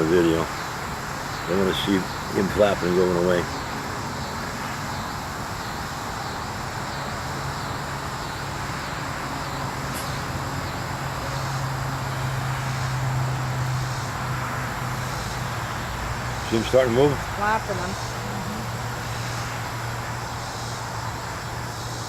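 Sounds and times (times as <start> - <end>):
noise haze: 0.0 - 22.0
faint high call: 16.4 - 19.1.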